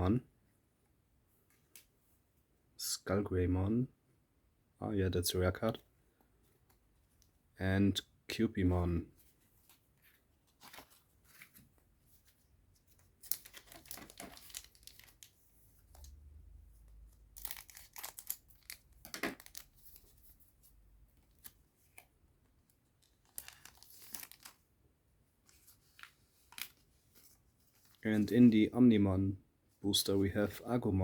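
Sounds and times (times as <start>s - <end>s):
wrapper tearing and crinkling: 13.2s - 15.3s, 17.3s - 19.8s, 23.0s - 24.6s.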